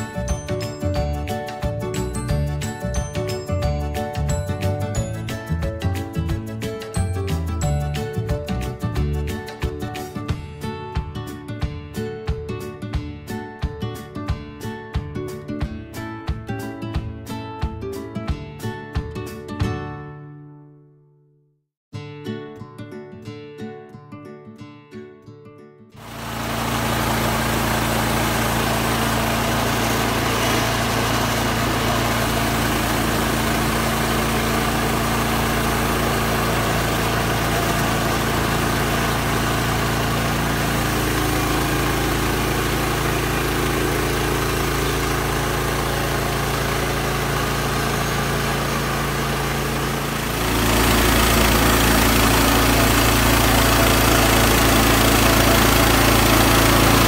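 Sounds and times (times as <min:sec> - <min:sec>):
engine running steadily: 0:26.0 - 0:57.0.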